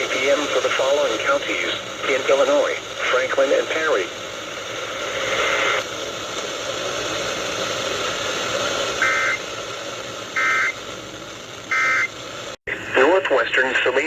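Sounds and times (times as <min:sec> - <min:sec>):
radio static hiss: 0:00.0 - 0:14.0
buzzy two-tone data bursts: 0:08.9 - 0:09.4, 0:10.3 - 0:10.9, 0:11.7 - 0:12.2.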